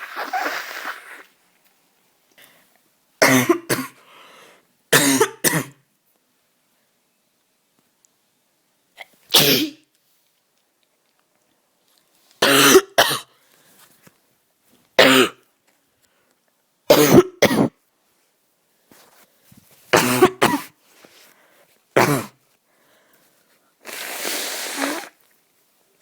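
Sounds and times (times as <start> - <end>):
person coughing hard: 3.2 - 4.0, 4.9 - 5.8, 9.4 - 9.8, 12.4 - 13.3, 15.0 - 15.4, 16.9 - 17.7, 20.0 - 20.7, 22.0 - 22.4.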